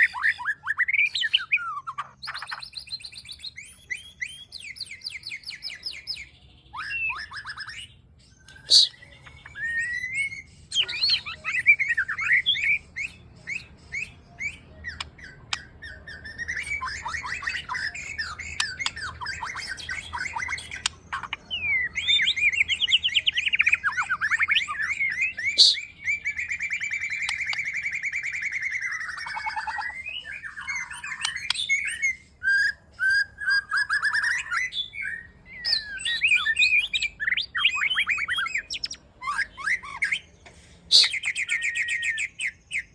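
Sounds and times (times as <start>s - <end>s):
bird singing trills and chirps: 0.0s - 42.9s.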